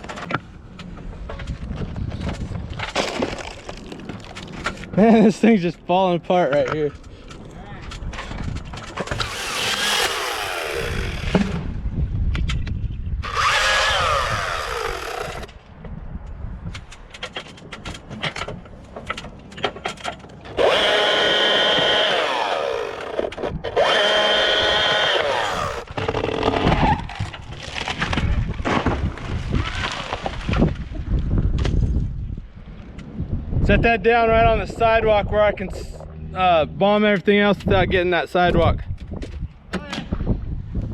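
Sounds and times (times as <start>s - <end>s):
wood cracking and snapping: 0.0s - 5.0s, 7.9s - 11.6s, 13.2s - 15.6s, 16.8s - 32.0s
chainsaw cutting wood: 8.9s - 11.6s, 13.2s - 15.6s, 20.4s - 26.8s.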